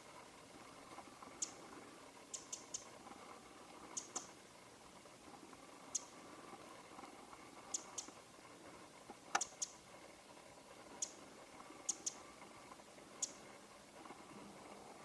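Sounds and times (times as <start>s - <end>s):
bird clicking call notes: 2.3s - 2.9s, 3.9s - 4.3s, 7.7s - 8.2s, 9.3s - 9.8s, 11.8s - 12.2s.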